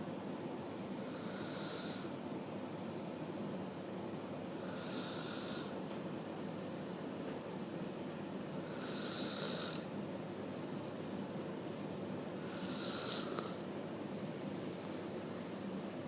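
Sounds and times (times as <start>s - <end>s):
person snoring: 8.6s - 9.9s, 12.4s - 15.4s.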